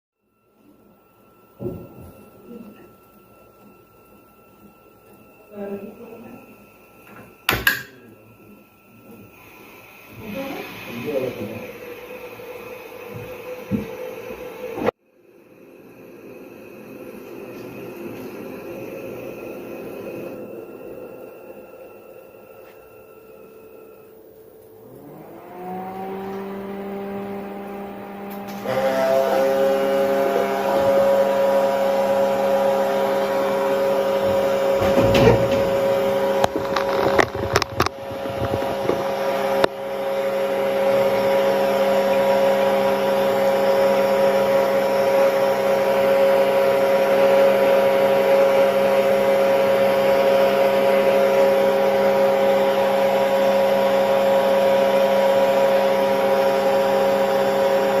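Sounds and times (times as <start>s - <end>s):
small electric motor humming: 9.8s - 14.9s, 24.7s - 58.0s.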